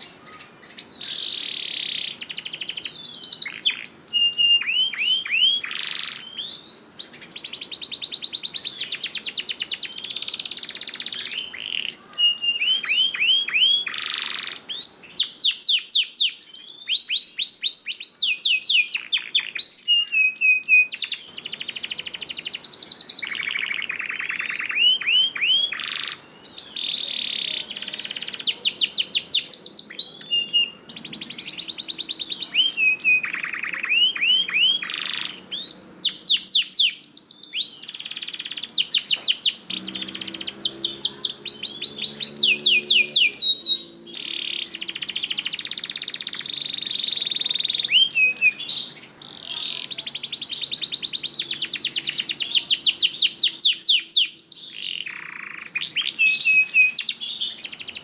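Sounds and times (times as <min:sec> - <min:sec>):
canary singing: 0:00.0 - 0:58.0.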